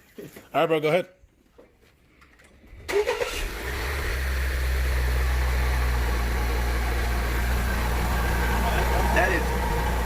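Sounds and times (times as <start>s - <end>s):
car engine starting and idling: 2.8s - 10.0s.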